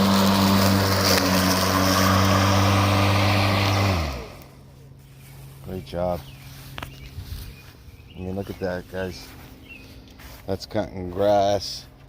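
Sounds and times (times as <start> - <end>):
electric lawn mower running: 0.0 - 7.8.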